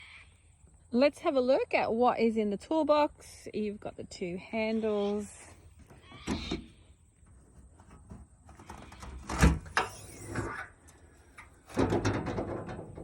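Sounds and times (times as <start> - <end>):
metal toolbox clunks and knocks: 7.8 - 10.5, 11.3 - 13.0.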